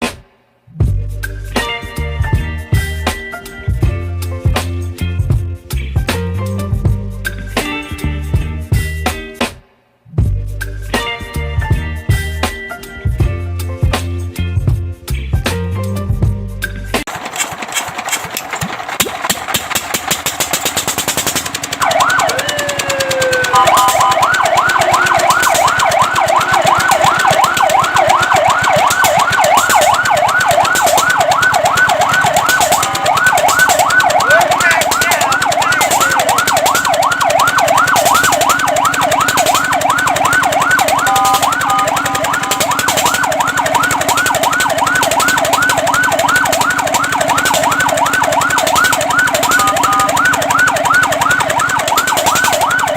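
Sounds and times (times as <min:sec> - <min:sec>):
engine clattering: 0:17.0 - 0:52.9
fire truck siren wailing and yelping: 0:17.0 - 0:52.9.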